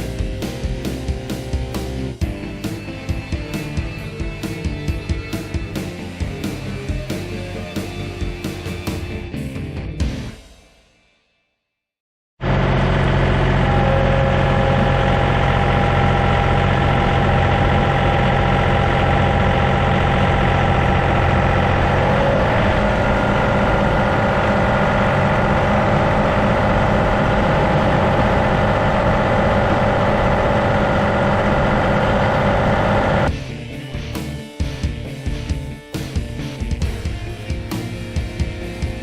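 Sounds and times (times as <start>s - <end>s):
whining tone: 12.4s - 33.3s
tractor diesel engine running: 12.4s - 33.4s.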